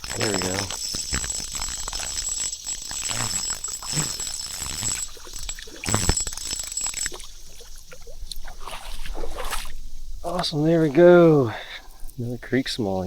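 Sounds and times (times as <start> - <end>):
fish splashing in water: 0.0 - 9.8.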